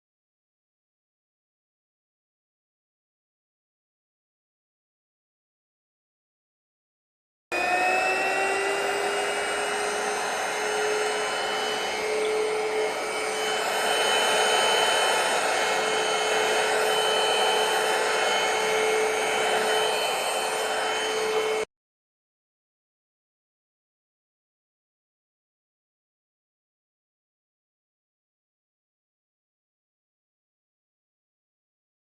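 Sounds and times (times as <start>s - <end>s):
vacuum cleaner motor whine: 7.5s - 21.7s.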